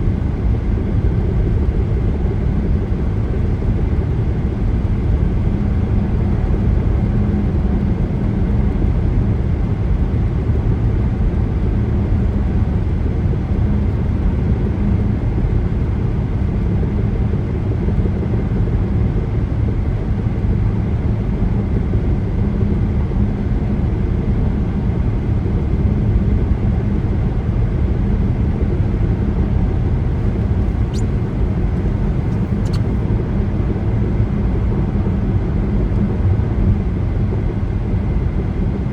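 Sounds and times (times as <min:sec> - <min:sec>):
car tyre and road noise: 0:29.9 - 0:33.3
faint ticks: 0:30.2 - 0:33.1.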